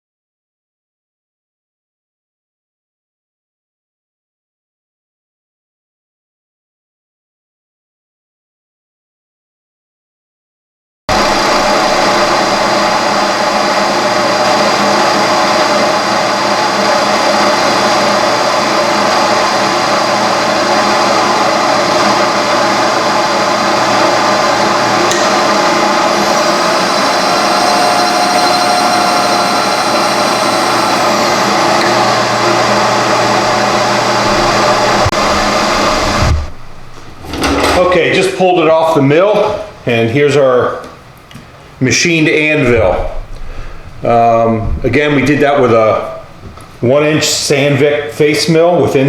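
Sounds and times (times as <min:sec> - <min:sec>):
milling machine cutting metal: 0:11.1 - 0:38.1.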